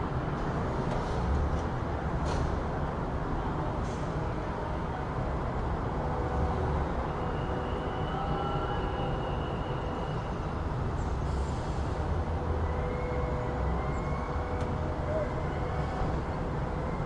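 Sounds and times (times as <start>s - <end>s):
passing traffic rumble: 0.0s - 17.0s
faint high squeal: 7.0s - 10.7s, 12.6s - 17.0s.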